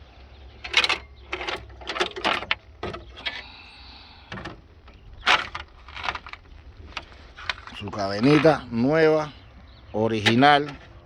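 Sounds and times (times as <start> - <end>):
metallic clicks of engine parts: 0.5 - 3.6, 4.3 - 8.7, 10.0 - 11.0.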